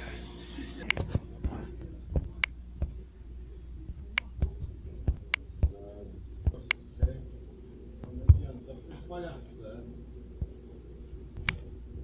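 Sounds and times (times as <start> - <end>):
steady low hum: 0.0 - 12.0
sharp clicks and taps: 4.0 - 5.8, 11.4 - 11.6.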